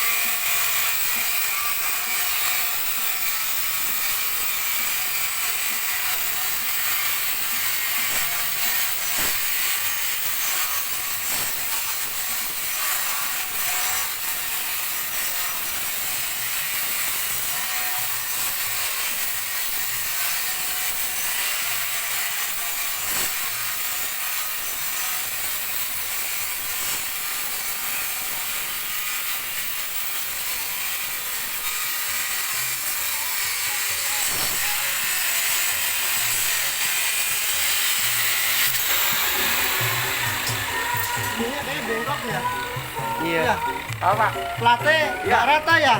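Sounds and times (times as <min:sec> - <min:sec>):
abrasive pad hissing on metal: 0:34.0 - 0:44.5.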